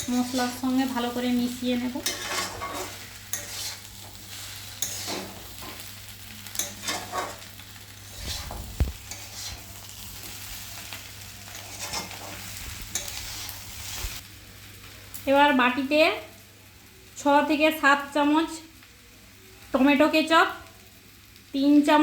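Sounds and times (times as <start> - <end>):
spatula scraping a pan: 0.0 - 14.2
chicken sizzling in a pan: 0.0 - 22.0.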